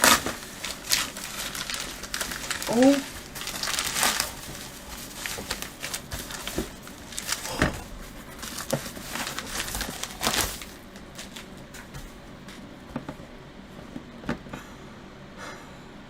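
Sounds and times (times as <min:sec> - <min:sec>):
box packaging crinkling: 0:00.0 - 0:11.8.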